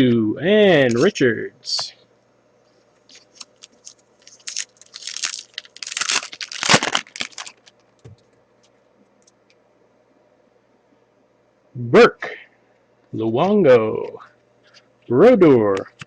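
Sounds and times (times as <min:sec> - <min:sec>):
wrapper tearing and crinkling: 0:03.1 - 0:07.8.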